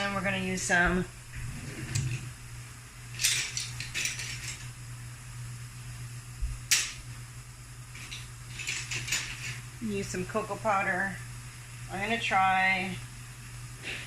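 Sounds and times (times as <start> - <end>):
steady low hum: 0.0 - 14.0
kitchen items scraping and rustling: 1.4 - 2.4, 3.1 - 4.7, 7.9 - 9.7.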